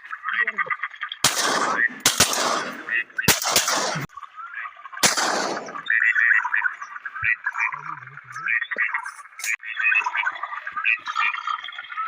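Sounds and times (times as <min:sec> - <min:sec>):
birds chattering: 0:00.0 - 0:12.0
shotgun shots with echo: 0:01.2 - 0:04.1, 0:05.0 - 0:05.8.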